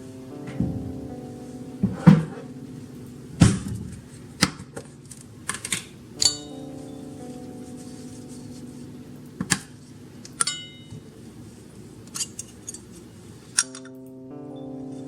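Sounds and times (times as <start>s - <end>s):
soft background music: 0.0s - 15.0s
kitchenware clinking: 10.4s - 11.0s.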